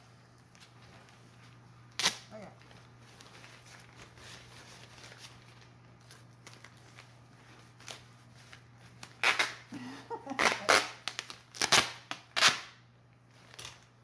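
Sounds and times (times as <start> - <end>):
duct tape ripping off roll: 1.9 - 2.3, 9.0 - 9.7, 10.3 - 12.8.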